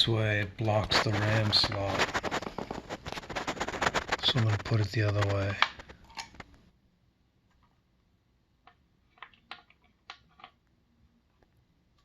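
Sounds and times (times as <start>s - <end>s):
faint clicks and taps: 0.4s - 6.6s, 8.6s - 10.7s.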